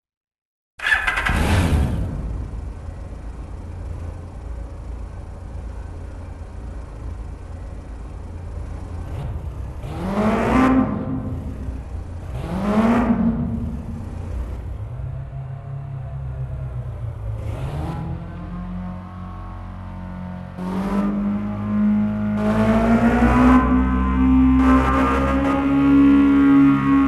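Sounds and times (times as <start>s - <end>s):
motorcycle engine revving and idling: 0.8s - 27.0s.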